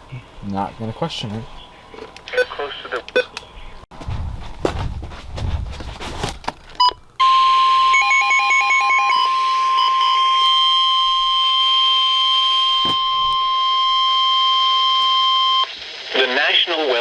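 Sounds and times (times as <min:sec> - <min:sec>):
steady high alarm tone: 0:07.2 - 0:15.7.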